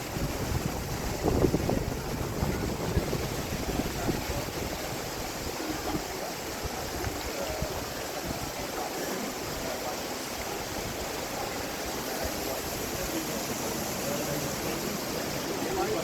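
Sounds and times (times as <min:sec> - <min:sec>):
wind buffeting microphone: 0:00.0 - 0:09.8.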